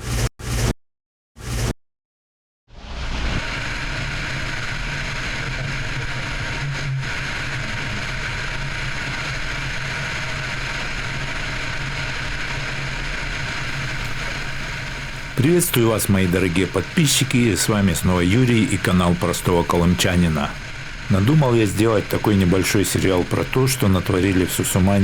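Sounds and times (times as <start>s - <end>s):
car engine and tyre noise: 13.7s - 17.3s.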